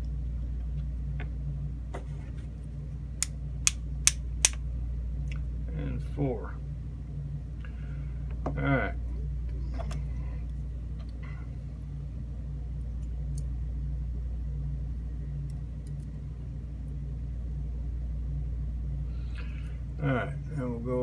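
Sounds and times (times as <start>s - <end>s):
low background hum and rumble: 0.0s - 21.0s.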